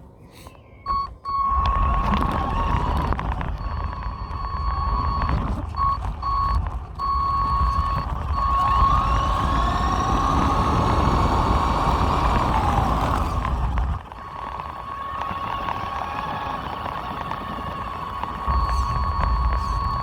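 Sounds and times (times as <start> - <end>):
toy truck motor whining: 1.3 - 20.0
low rumble: 18.5 - 20.0.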